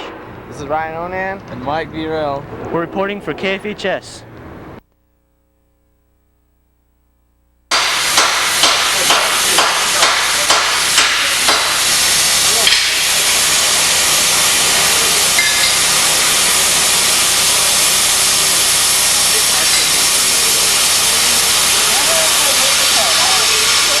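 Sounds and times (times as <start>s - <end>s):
loud steady hiss: 7.7s - 24.0s.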